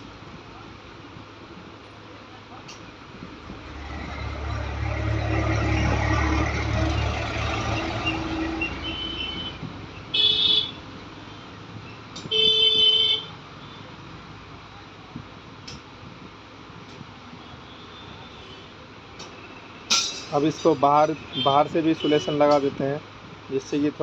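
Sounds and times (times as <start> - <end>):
vehicle engine passing: 3.2 - 9.7
vehicle horn toots: 7.8 - 10.8, 12.3 - 13.3.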